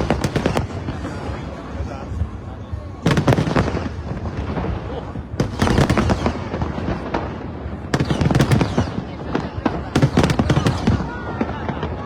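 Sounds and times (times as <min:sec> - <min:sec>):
fireworks bangs and crackling: 0:00.0 - 0:12.0.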